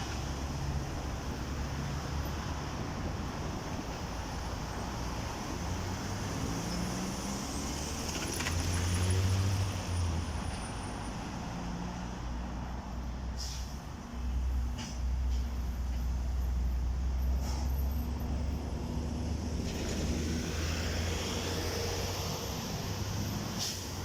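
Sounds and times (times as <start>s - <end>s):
train wheels rumbling on rails: 13.4s - 24.0s.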